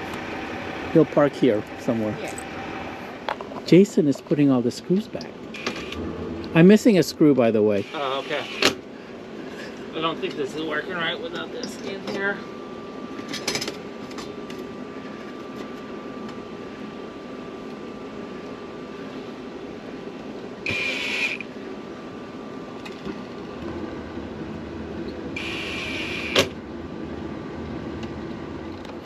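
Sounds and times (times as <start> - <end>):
fan hum: 0.0 - 29.0
power screwdriver whirring: 20.7 - 21.4.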